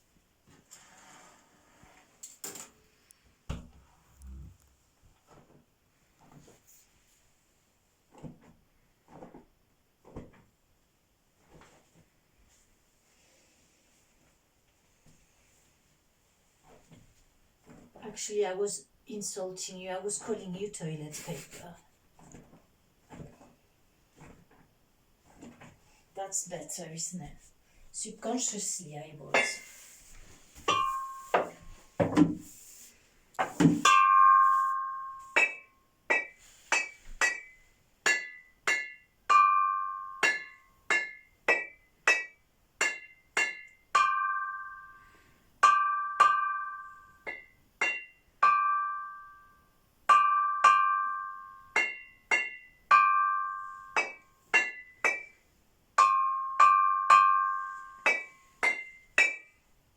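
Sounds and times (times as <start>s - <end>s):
mallet strikes on ringing object: 30.7s - 31.8s, 33.8s - 45.0s, 45.6s - 49.5s, 50.1s - 55.3s, 56.0s - 59.5s.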